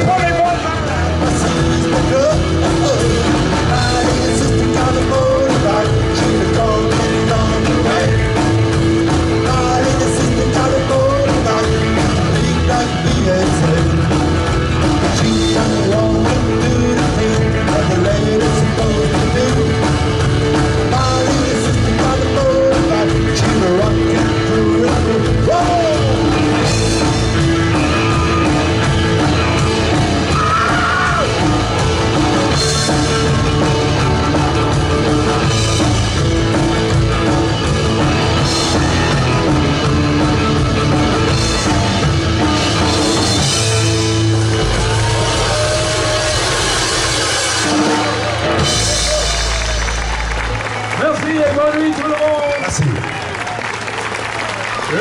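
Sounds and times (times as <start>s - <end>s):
person singing: 0.0s - 14.3s, 15.0s - 28.6s
live rock band playing: 0.0s - 55.0s.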